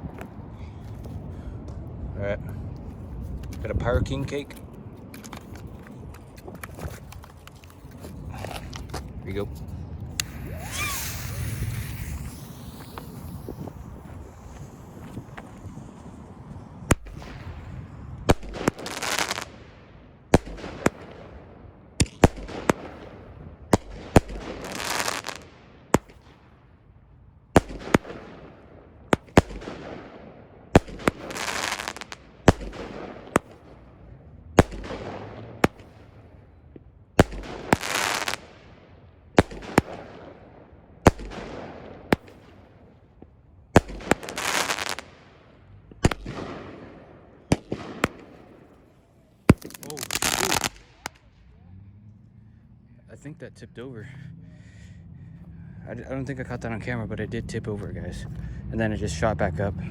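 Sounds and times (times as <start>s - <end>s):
crackling hisses: 5.1s - 21.2s, 23.7s - 26.3s, 30.8s - 33.8s, 37.2s - 38.7s, 43.8s - 46.4s, 47.5s - 51.2s
firework bangs: 8.2s - 26.6s, 27.6s - 36.5s, 37.2s - 51.3s.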